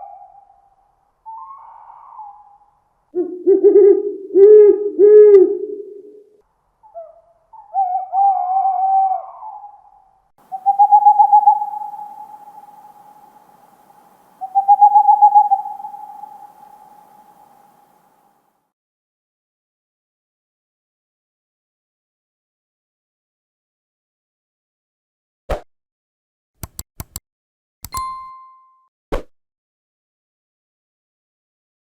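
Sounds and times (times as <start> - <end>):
owl hooting: 0.0 - 6.1, 6.8 - 18.2.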